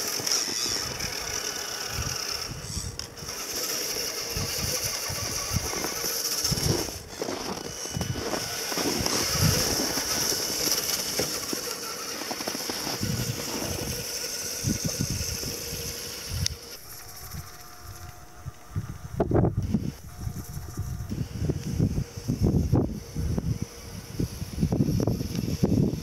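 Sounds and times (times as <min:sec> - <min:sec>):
toy truck motor whining: 0:00.0 - 0:26.0
truck clattering over snow: 0:03.2 - 0:16.2.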